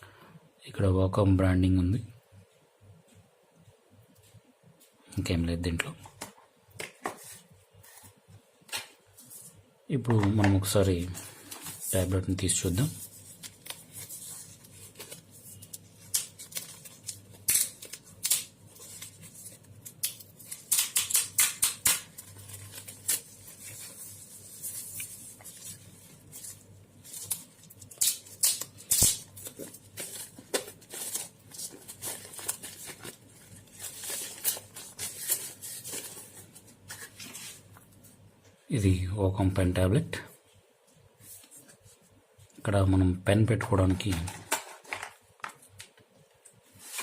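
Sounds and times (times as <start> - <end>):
packaging rustling and crinkling: 10.2 - 21.1, 21.8 - 37.8, 46.6 - 47.0.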